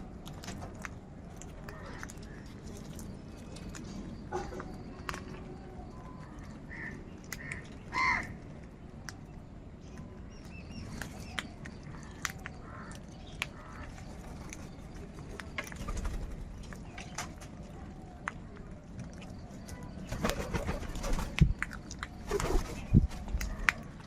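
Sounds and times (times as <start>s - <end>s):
crows cawing: 6.7s - 8.4s, 12.6s - 13.0s.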